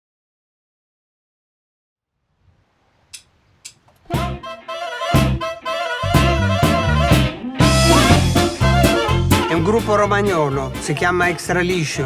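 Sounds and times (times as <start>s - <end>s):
dance band with drums and winds: 4.1s - 11.0s.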